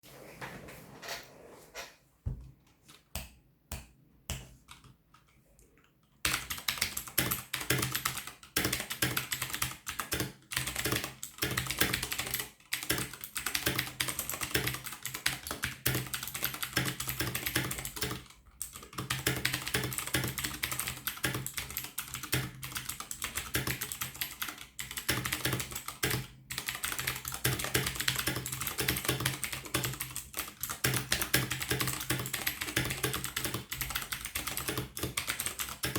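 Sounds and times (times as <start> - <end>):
typing on clicky mechanical keyboard: 6.2 - 35.9.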